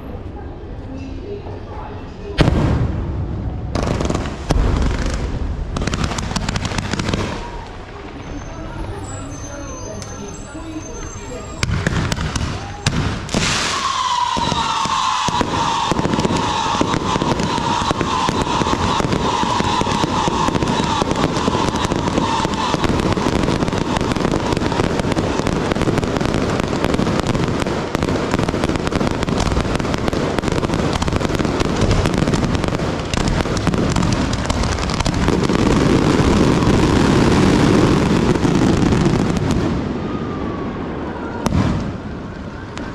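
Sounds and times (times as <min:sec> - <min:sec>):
firework pops crackling: 0:03.8 - 0:39.7
falling whistling tone: 0:07.4 - 0:11.7.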